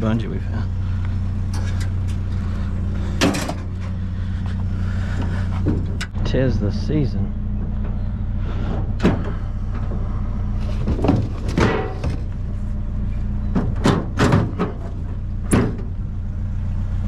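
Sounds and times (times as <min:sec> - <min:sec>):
steady low engine hum: 0:00.0 - 0:17.0
scrap items knocking and clattering: 0:10.8 - 0:12.3.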